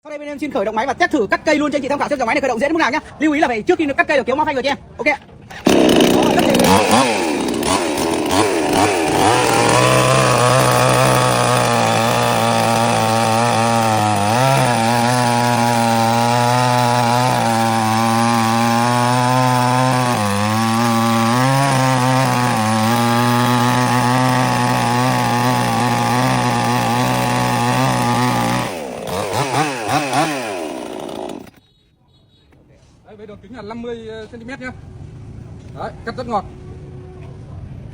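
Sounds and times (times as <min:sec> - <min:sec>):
chainsaw cutting log: 0:05.5 - 0:31.6.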